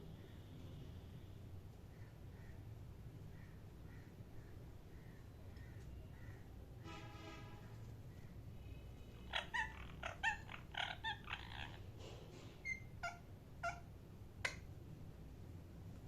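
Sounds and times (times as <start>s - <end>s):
parrot chirping calls: 9.3s - 11.9s, 12.6s - 14.7s.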